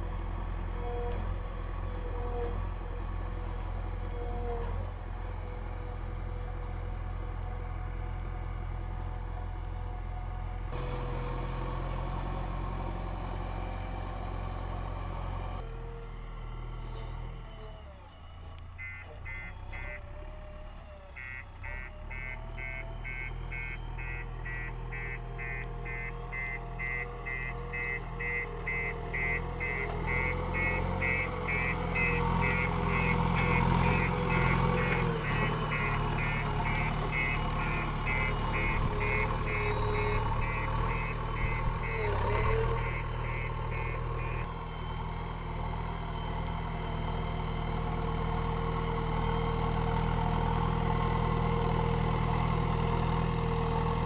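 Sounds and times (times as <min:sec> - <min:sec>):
diesel engine working: 0:00.0 - 0:54.0
reversing alarm beeping: 0:17.6 - 0:45.2.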